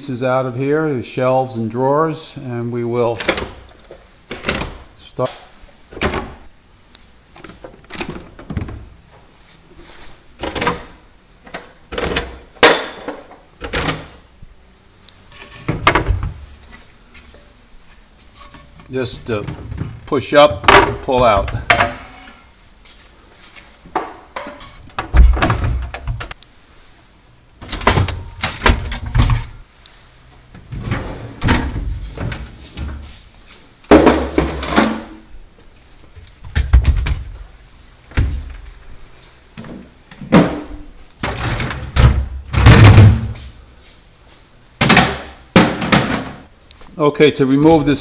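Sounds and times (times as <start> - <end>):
refrigerator shelves clunking: 4.3 - 6.4, 18.4 - 22.3, 23.9 - 26.3, 27.6 - 29.6, 30.6 - 33.1.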